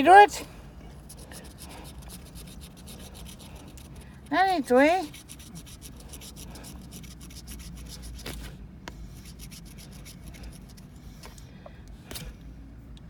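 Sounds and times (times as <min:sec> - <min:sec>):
scratching lottery ticket: 0:00.9 - 0:11.4.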